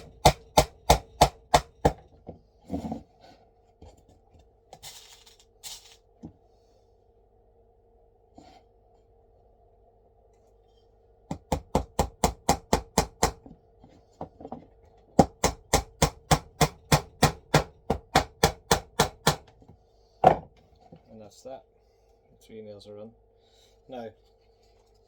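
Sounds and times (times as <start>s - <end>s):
hammer tapping nails into wood: 0.0s - 2.1s, 11.3s - 13.5s, 15.2s - 19.6s.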